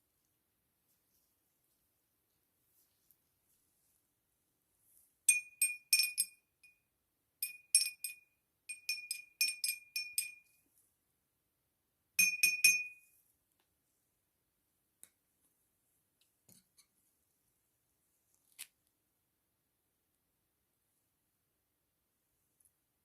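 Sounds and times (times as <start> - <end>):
spoon clinking inside a glass: 5.3 - 6.8, 7.4 - 10.6, 12.2 - 13.0.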